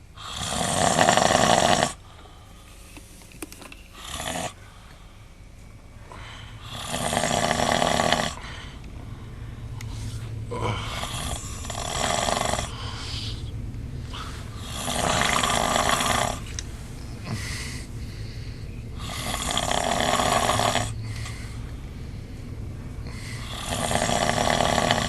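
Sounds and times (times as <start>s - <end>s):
man snoring: 0.2s - 2.0s, 4.0s - 4.6s, 6.6s - 8.5s, 10.5s - 12.9s, 14.1s - 16.5s, 19.0s - 21.3s, 23.1s - 25.0s
quiet breathing: 1.9s - 3.2s, 3.8s - 25.0s.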